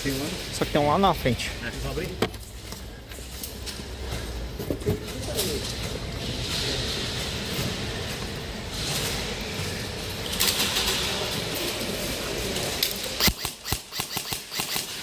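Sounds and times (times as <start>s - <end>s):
airsoft gun firing: 13.2s - 15.0s.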